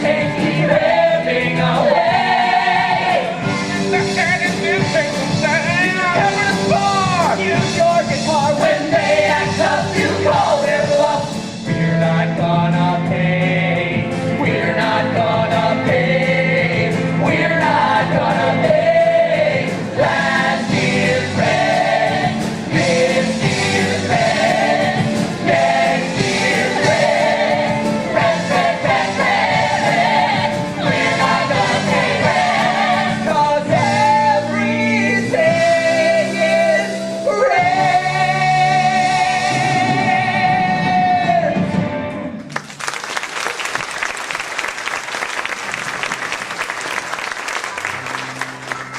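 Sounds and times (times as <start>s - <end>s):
cast singing together: 0.0s - 5.0s, 7.4s - 41.6s
live rock band: 0.0s - 42.7s
audience applause: 42.5s - 48.9s.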